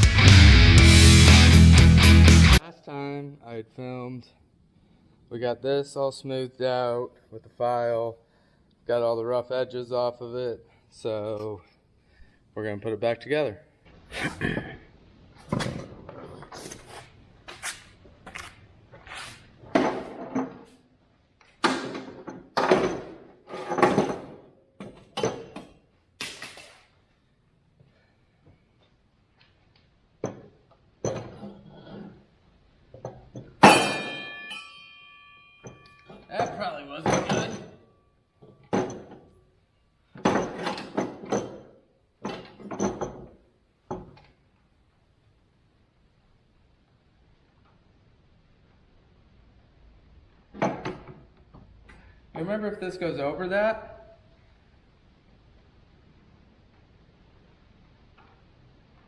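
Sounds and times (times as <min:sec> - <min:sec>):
metal parts and tools clanking: 0:33.0 - 0:39.3, 0:40.2 - 0:44.3.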